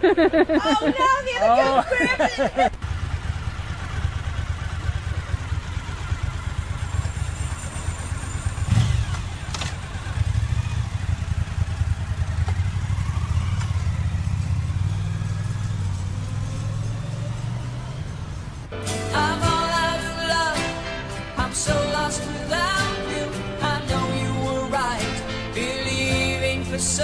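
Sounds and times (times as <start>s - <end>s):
vehicle engine rumbling: 0.0s - 27.0s.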